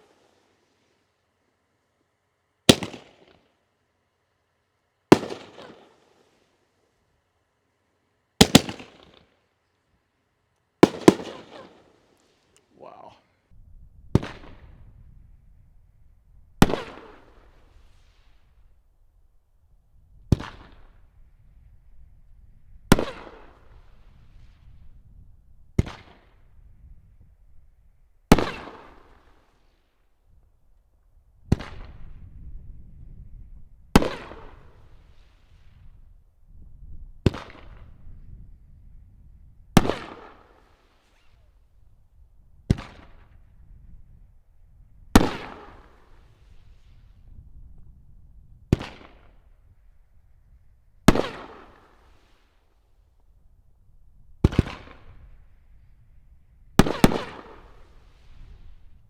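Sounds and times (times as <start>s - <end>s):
firework shells banging: 10.8s - 11.8s.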